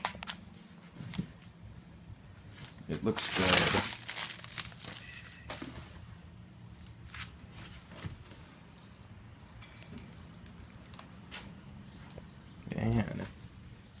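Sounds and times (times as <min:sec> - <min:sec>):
handling rustles and knocks: 0:02.5 - 0:06.1, 0:07.1 - 0:08.7.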